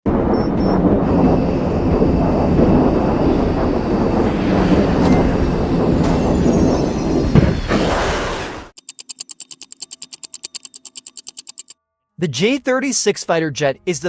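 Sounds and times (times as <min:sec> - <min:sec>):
jet engines roaring: 0:00.1 - 0:07.4.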